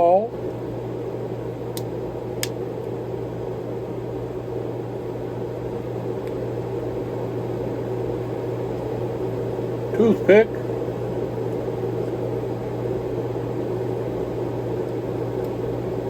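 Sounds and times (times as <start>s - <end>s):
low electrical hum: 0.0s - 16.0s
short light clicks: 1.7s - 2.6s.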